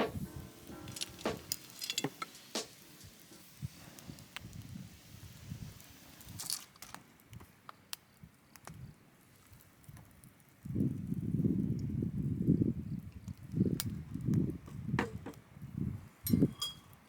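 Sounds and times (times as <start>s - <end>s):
brief hiss: 0.0s - 6.8s.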